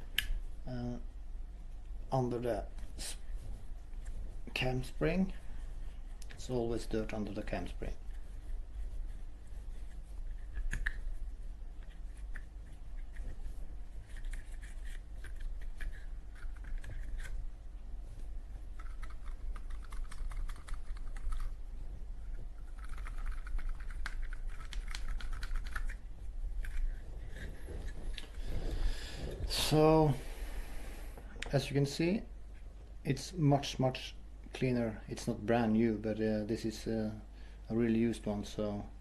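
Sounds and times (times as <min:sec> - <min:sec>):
cotton swab scrubbing metal: 0:07.3 - 0:17.5.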